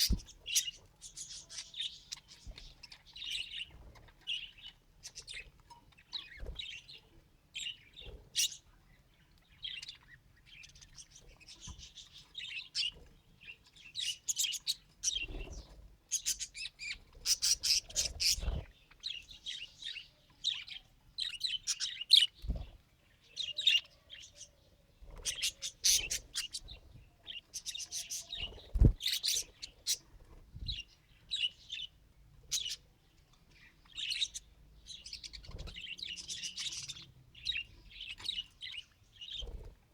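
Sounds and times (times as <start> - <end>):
budgerigar chirping and warbling: 16.1 - 18.6, 25.2 - 30.0.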